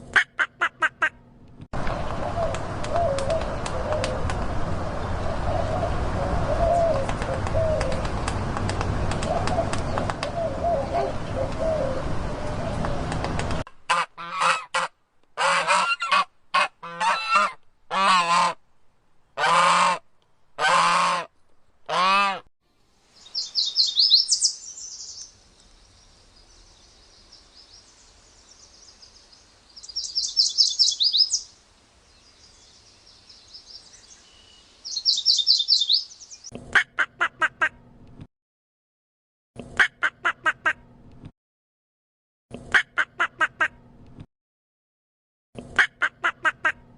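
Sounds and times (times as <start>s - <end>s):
short bird calls: 23.2s - 25.3s, 29.8s - 31.5s, 33.5s - 36.5s
high fast trilling birdsong: 23.2s - 36.5s.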